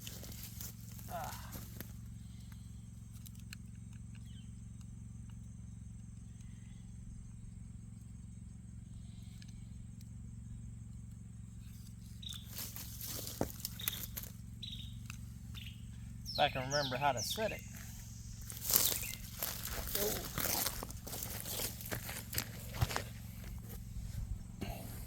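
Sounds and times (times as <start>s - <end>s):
steady low rumble: 12.2s - 25.0s
rustling: 12.3s - 14.4s, 17.6s - 25.0s.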